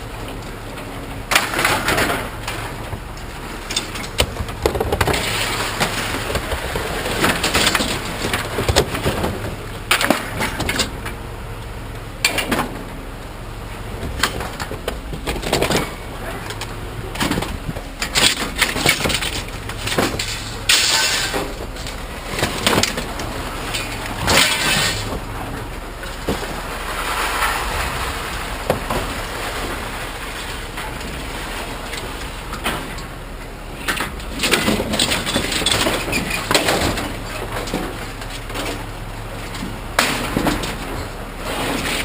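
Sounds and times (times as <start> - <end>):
steady low hum: 0.0 - 42.0
scrap metal clanking: 14.1 - 33.1.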